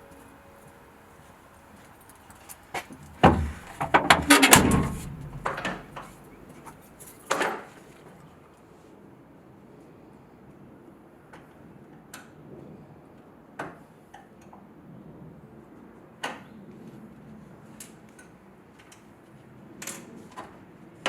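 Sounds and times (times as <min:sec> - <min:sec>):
low steady background noise: 0:00.0 - 0:21.0
sharp clicks and light knocks: 0:03.2 - 0:07.6.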